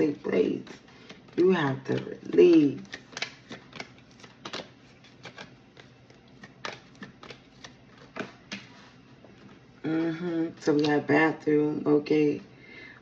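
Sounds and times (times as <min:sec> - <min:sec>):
cards being shuffled: 0:00.0 - 0:09.0.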